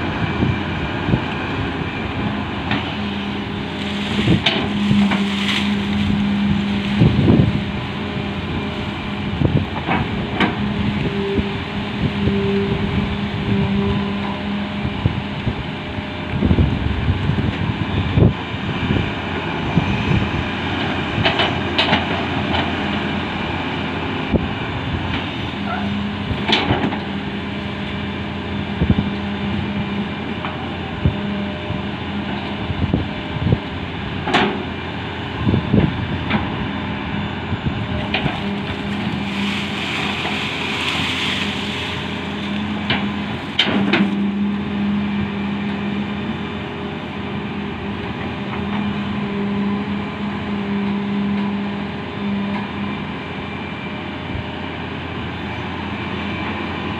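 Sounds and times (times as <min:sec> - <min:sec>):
excavator diesel engine: 0:00.0 - 0:56.9
material pouring hiss: 0:38.6 - 0:42.6.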